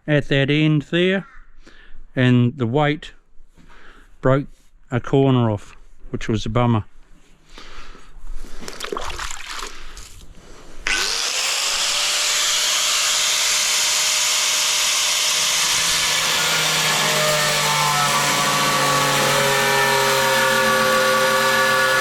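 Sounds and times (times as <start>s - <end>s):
angle grinder cutting tile: 10.8s - 22.0s.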